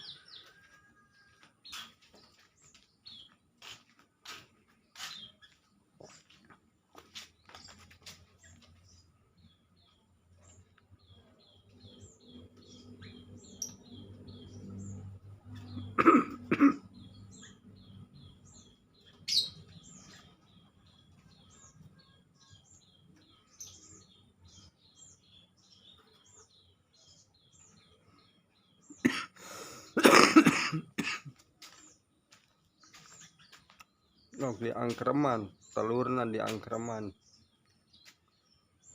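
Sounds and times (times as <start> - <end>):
small birds chirping: 0.0 - 38.9
man coughing: 15.9 - 16.8, 28.9 - 31.4.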